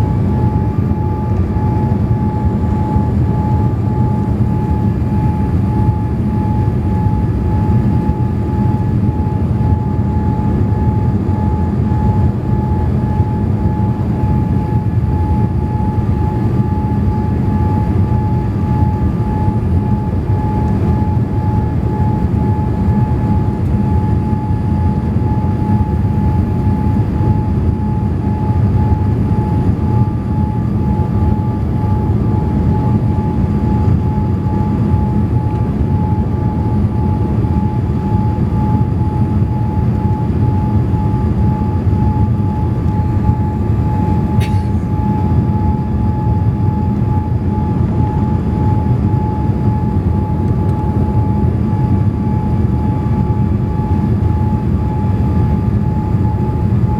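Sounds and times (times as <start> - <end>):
airplane cabin airflow and engines: 0.0 - 56.9
high hydraulic whine: 44.2 - 45.8
brief click: 44.4 - 44.8.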